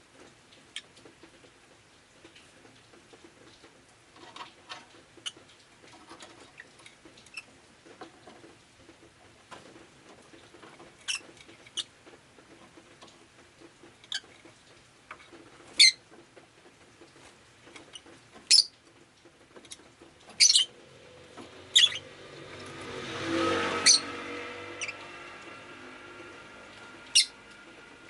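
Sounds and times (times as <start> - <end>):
bird chirping: 17.9 - 18.7, 19.7 - 20.7, 21.7 - 22.1, 23.8 - 24.2, 24.8 - 25.1, 27.0 - 27.5
vehicle passing: 20.6 - 28.0.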